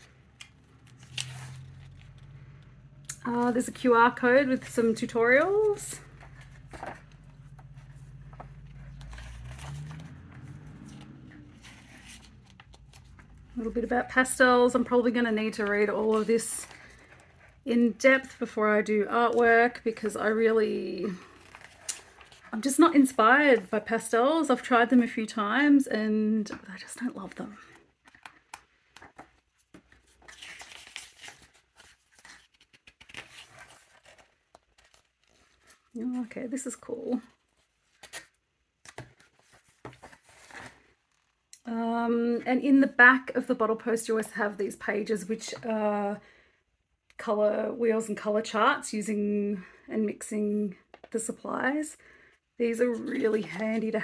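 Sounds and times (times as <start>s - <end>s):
magazine pages turning: 0.0s - 17.6s, 21.1s - 23.1s, 27.6s - 36.0s, 37.4s - 41.4s.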